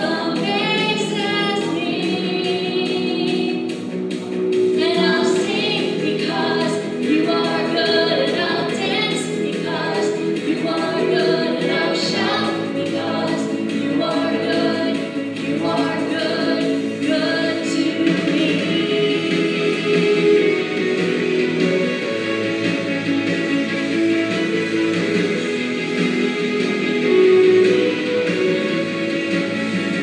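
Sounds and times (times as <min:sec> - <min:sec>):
musical accompaniment: 0:00.0 - 0:30.0
group singing a worship song: 0:05.1 - 0:19.8.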